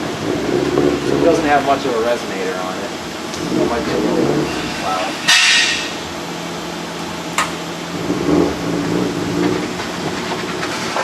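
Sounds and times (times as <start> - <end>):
mechanical hum: 0.0 - 11.0.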